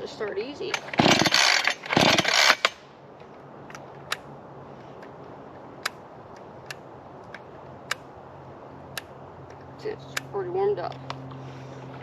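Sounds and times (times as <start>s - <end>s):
chainsaw starter cord pulled: 0.7s - 2.8s
sharp clicks: 3.6s - 4.3s, 5.8s - 8.1s.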